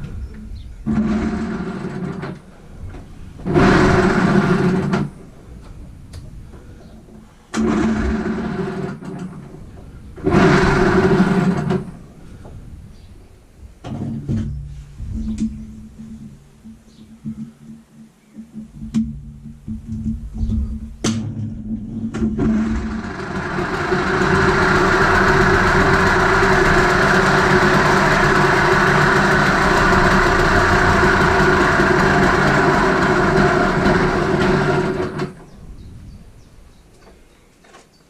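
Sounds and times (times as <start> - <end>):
fan rush of air: 0.0 - 37.7
leaf blower engine running: 0.8 - 2.4, 3.4 - 5.2, 7.5 - 9.6, 10.2 - 12.5, 22.2 - 35.5.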